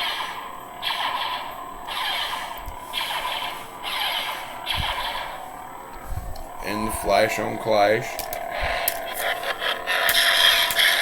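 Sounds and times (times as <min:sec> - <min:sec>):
zapping blaster deflection sounds: 0:00.0 - 0:05.5, 0:08.2 - 0:11.0
electronic blade hum: 0:00.0 - 0:11.0.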